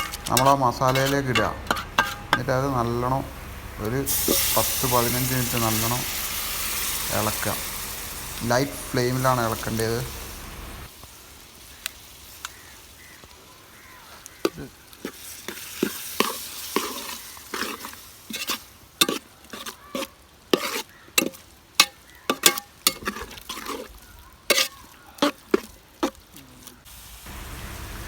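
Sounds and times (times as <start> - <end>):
spoon scraping a pot: 0.0 - 3.3, 14.4 - 26.3
meat sizzling in a pot: 0.0 - 28.0.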